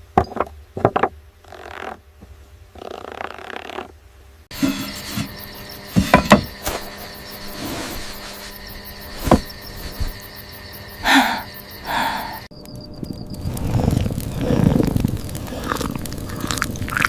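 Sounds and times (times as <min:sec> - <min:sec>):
short rustling bursts: 0:06.6 - 0:10.3.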